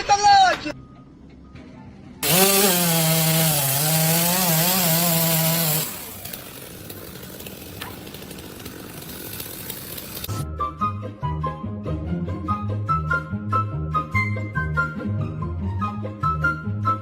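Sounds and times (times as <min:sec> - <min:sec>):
power tool running at high speed: 0:02.2 - 0:10.4.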